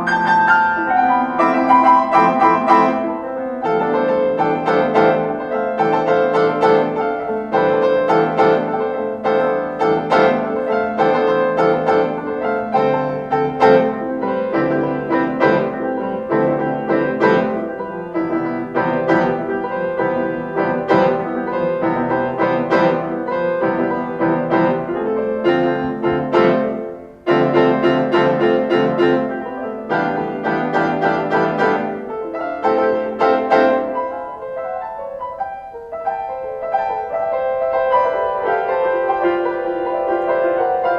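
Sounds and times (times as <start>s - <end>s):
solo piano playing: 0.0s - 40.9s.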